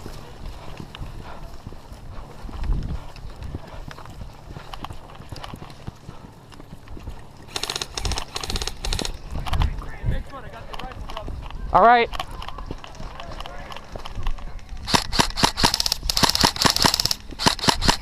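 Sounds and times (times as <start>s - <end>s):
footsteps running on dry brush: 0.0s - 18.0s
rapid rattling burst: 7.5s - 9.7s, 14.8s - 18.0s.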